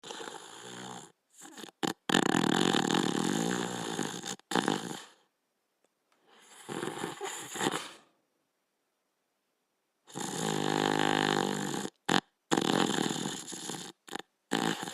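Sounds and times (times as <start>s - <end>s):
dog snoring: 0.0s - 5.3s, 6.3s - 8.0s, 10.1s - 14.9s.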